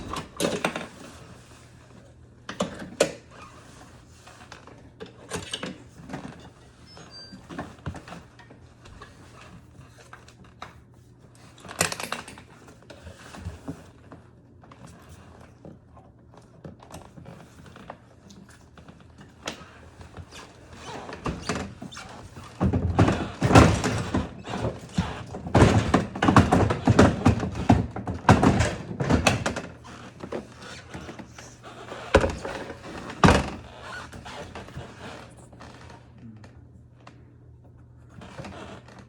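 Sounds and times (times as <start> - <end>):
dishwasher door knocks and thunks: 22.6 - 29.7.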